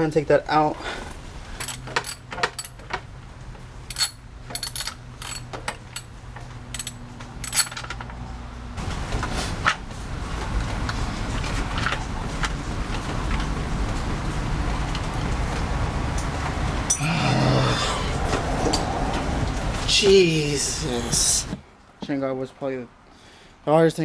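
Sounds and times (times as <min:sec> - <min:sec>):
steady background noise: 0:00.0 - 0:24.0
metal clinks: 0:03.9 - 0:06.1, 0:06.7 - 0:08.1
ratchet wrench clicking: 0:06.7 - 0:07.8.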